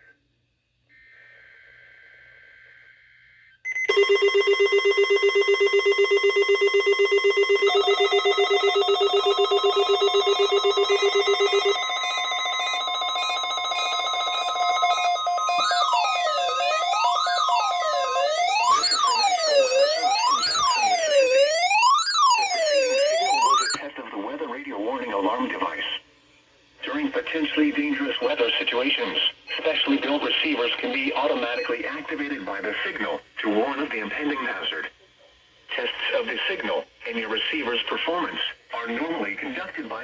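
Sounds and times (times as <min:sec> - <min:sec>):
rapid electronic beeping: 0:03.7 - 0:23.8, 0:26.8 - 0:33.0
steady alarm tone: 0:03.7 - 0:23.8, 0:26.8 - 0:33.1
rising and falling siren tone: 0:07.5 - 0:23.8.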